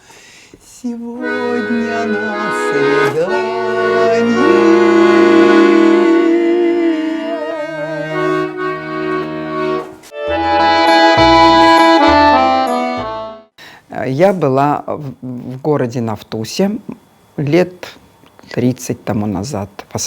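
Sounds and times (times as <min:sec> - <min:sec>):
accordion playing chords: 0:01.1 - 0:13.6.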